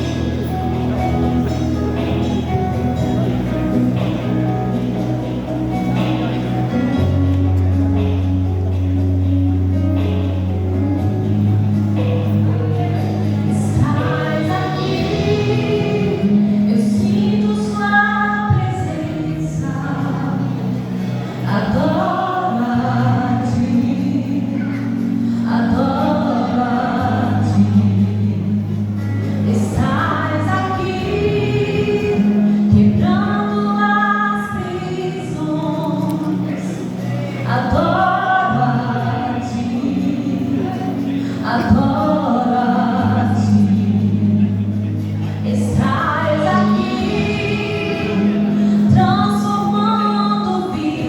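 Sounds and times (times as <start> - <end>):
low accompaniment: 0.0 - 51.0
vocal group singing in harmony: 13.0 - 44.7, 45.4 - 51.0.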